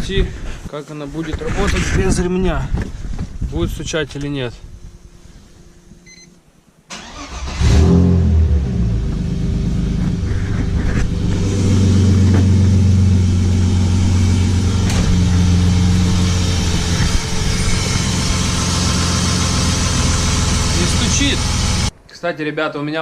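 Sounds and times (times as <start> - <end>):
car engine running: 7.6 - 21.9.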